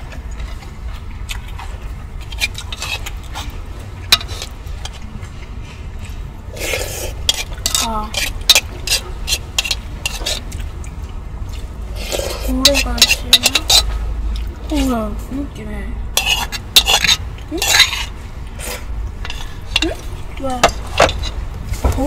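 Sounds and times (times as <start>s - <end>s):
steady low hum: 0.0s - 22.0s
utensil scraping bowl: 1.5s - 5.1s, 6.5s - 10.6s, 11.9s - 15.1s, 16.1s - 22.0s
spoon and chopsticks clinking bowl: 12.6s - 13.9s.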